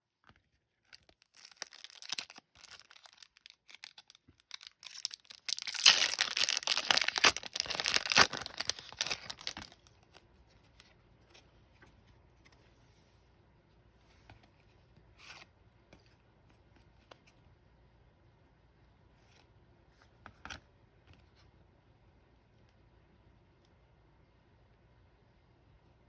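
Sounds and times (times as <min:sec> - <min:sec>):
wrapper tearing: 0:00.9 - 0:10.0
wrapper crinkling: 0:00.9 - 0:10.1
cards being handled: 0:01.0 - 0:09.9.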